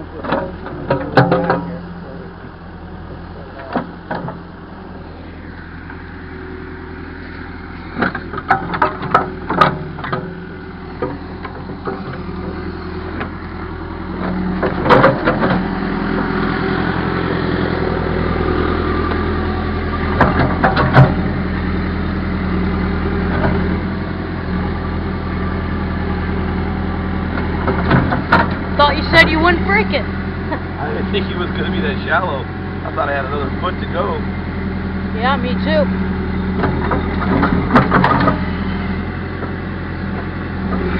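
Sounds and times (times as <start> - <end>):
bucket clanking metallically: 0.0 - 2.4
diesel engine running: 0.0 - 40.9.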